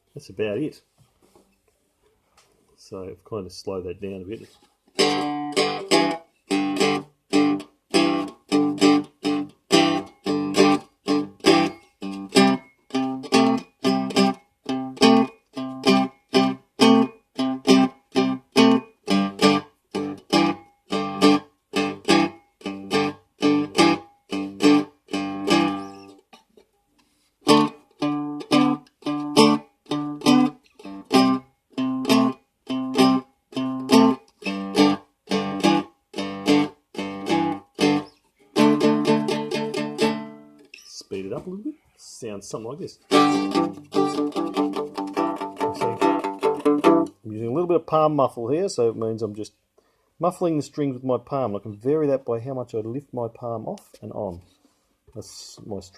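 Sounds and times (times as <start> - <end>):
guitar strummed slow blues: 5.0 - 26.2, 27.5 - 40.9, 43.1 - 47.1.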